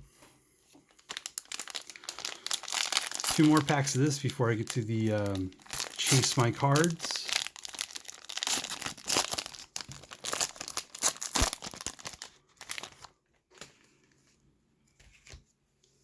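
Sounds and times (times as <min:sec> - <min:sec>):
plastic wrapper tearing and crinkling: 0:00.9 - 0:13.7.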